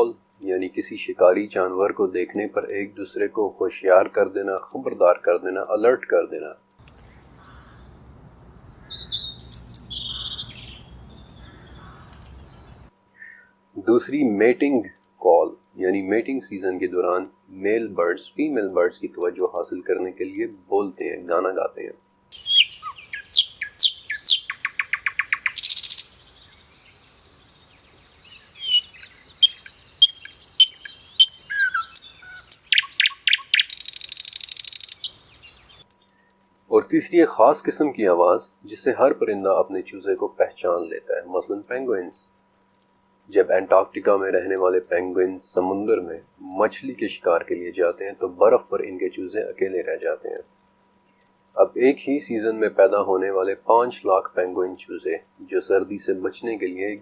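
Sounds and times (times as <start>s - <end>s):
songbird singing: 6.8s - 13.5s, 22.3s - 36.3s
bird alarm call: 6.9s - 13.5s, 22.4s - 36.0s.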